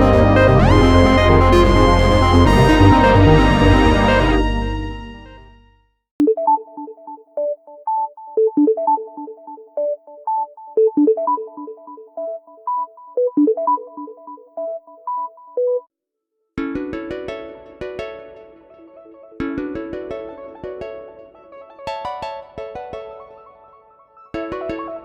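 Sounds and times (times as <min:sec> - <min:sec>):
electronic ringtone melody: 0:00.0 - 0:04.8, 0:06.2 - 0:15.8.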